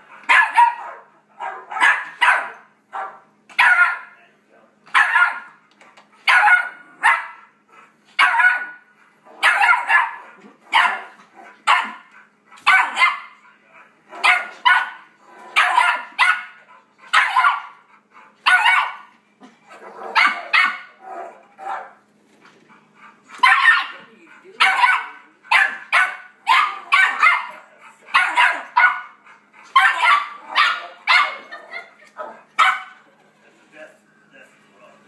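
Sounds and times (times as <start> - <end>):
puppy barking sharply: 0.3 - 4.1, 4.9 - 5.6, 6.3 - 7.4, 8.2 - 8.8, 9.4 - 11.1, 11.7 - 12.0, 12.7 - 13.4, 14.2 - 15.0, 15.6 - 17.7, 18.5 - 19.1, 20.2 - 20.9, 23.4 - 24.0, 24.6 - 27.5, 28.2 - 29.1, 29.8 - 31.5, 32.6 - 33.0
dog barks from computer speakers: 0.3 - 4.2, 4.9 - 5.6, 6.3 - 7.4, 8.2 - 8.8, 9.4 - 11.1, 11.7 - 13.4, 15.6 - 17.8, 20.1 - 20.9, 23.4 - 24.0, 24.6 - 29.1, 29.8 - 31.5, 32.6 - 33.0.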